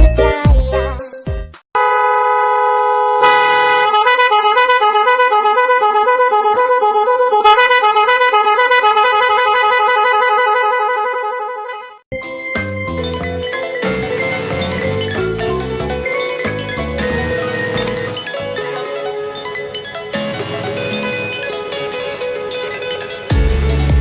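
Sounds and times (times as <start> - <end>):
truck horn blaring: 1.8 - 12.0, 13.4 - 24.0.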